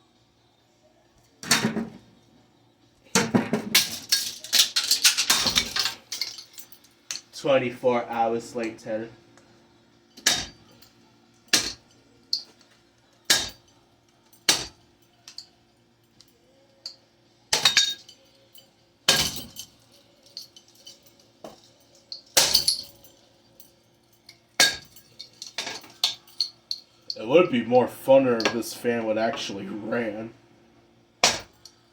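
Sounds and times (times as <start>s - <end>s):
metal clanking hits: 10.2s - 10.8s, 11.5s - 11.9s, 13.3s - 13.7s, 14.5s - 15.4s, 19.1s - 19.7s, 21.5s - 23.1s, 24.6s - 26.5s, 31.2s - 31.6s.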